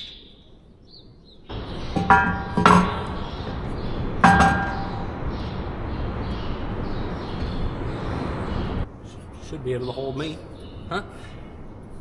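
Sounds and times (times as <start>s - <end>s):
metal clang: 1.5s - 5.2s
steady rushing noise: 1.5s - 9.6s.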